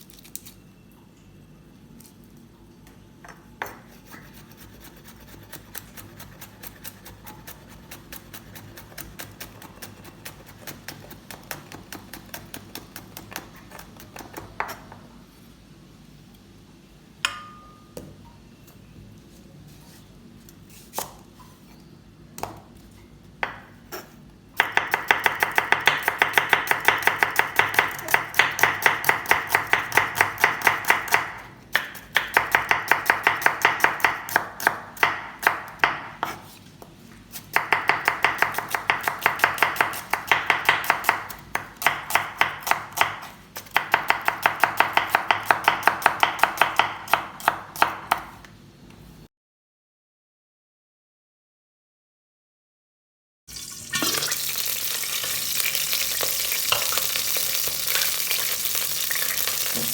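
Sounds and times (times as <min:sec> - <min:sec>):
knife chopping on cutting board: 0:23.4 - 0:48.5.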